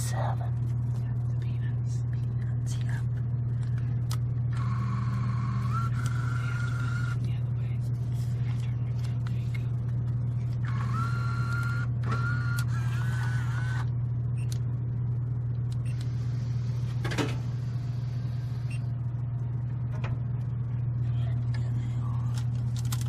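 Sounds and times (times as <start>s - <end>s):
steady low hum: 0.0s - 23.0s
vending machine motor whining: 3.2s - 23.0s.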